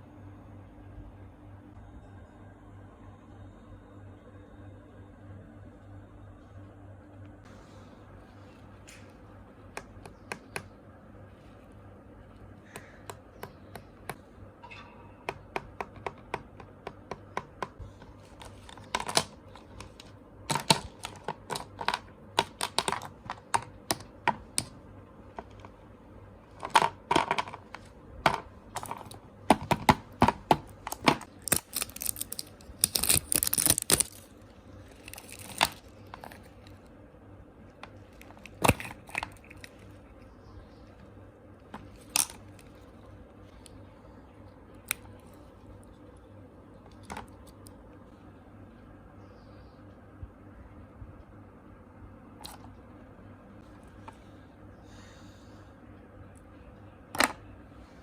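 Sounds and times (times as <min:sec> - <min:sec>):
small hard objects clicking: 0:26.6 - 0:34.3, 0:34.9 - 0:36.8.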